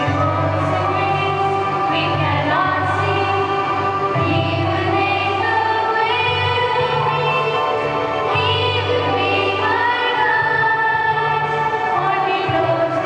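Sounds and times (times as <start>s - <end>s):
choir singing: 0.0s - 13.0s
steady bass line: 0.0s - 13.0s.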